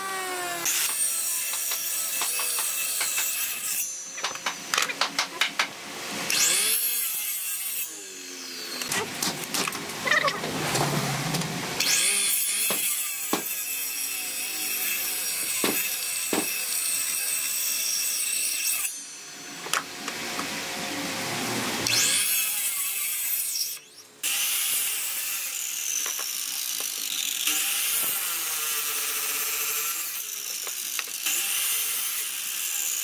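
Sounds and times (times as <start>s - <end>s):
power tool motor whining: 0.0s - 1.1s.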